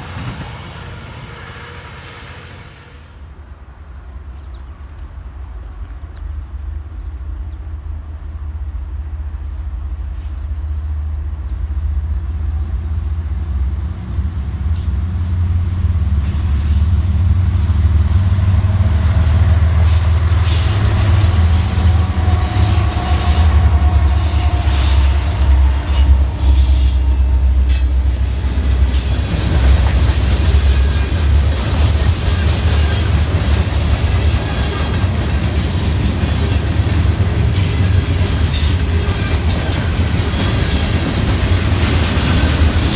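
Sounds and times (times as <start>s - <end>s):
train rumbling past: 0.0s - 42.9s.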